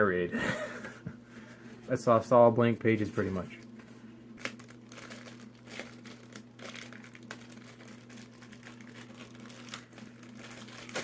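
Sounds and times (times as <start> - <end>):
paper and plastic rustling: 2.9 - 11.0.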